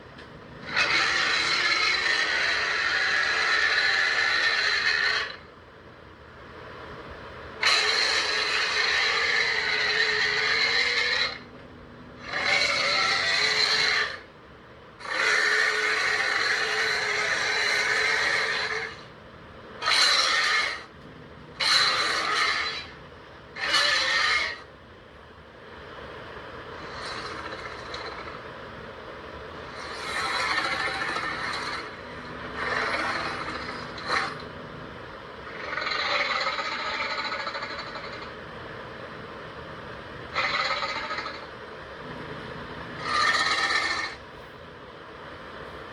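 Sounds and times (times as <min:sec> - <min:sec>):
monster roaring: 0:00.6 - 0:05.4, 0:07.6 - 0:11.4, 0:12.2 - 0:14.2, 0:15.0 - 0:19.0, 0:19.8 - 0:20.9, 0:21.6 - 0:22.9, 0:23.6 - 0:24.6, 0:26.9 - 0:28.4, 0:29.8 - 0:34.4, 0:35.5 - 0:38.3, 0:43.0 - 0:44.2
monster growling: 0:29.8 - 0:34.4.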